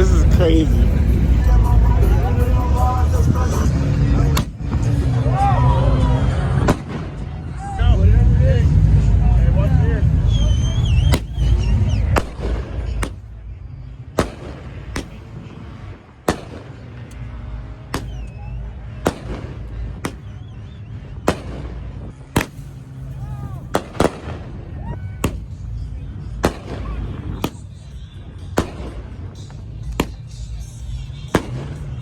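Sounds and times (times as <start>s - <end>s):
low rumble: 0.0s - 32.0s
sharp explosive bangs: 4.2s - 5.4s, 6.5s - 7.6s, 11.0s - 13.5s, 14.2s - 17.2s, 17.8s - 20.5s, 21.2s - 32.0s.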